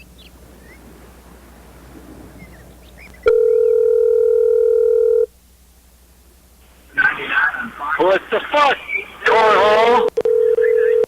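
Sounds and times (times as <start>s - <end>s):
faint background hiss: 0.0s - 11.0s
electronic telephone tone: 3.2s - 5.3s, 9.8s - 11.0s.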